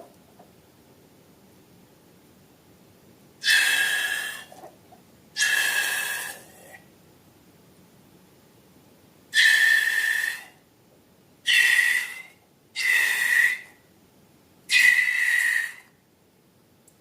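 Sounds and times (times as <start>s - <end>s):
air squealing from balloon neck: 3.4s - 4.6s, 5.4s - 6.5s, 9.4s - 10.6s, 11.5s - 13.8s, 14.7s - 15.9s.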